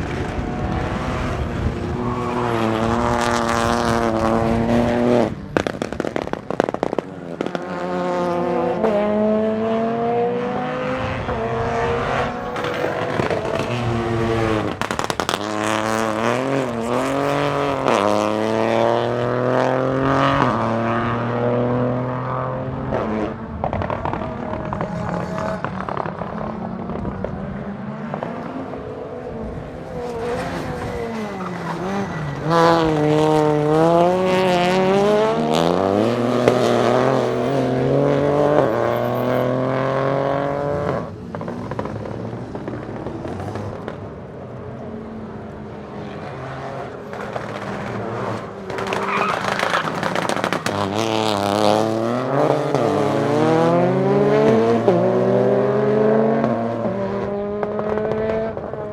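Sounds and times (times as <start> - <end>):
exhaust crackles and pops: 2.8 - 7.9, 12.4 - 18.3, 23.4 - 28.5, 40.9 - 44.3, 47.0 - 53.2, 57.5 - 58.9
car engine revving hard: 7.4 - 24.8, 31.8 - 41.1, 46.4 - 58.7.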